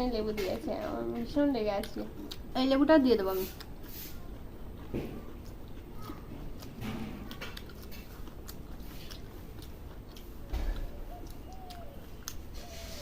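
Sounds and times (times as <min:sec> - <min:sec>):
chewing and eating: 0:00.1 - 0:13.0
wet mouth noises: 0:03.3 - 0:13.0.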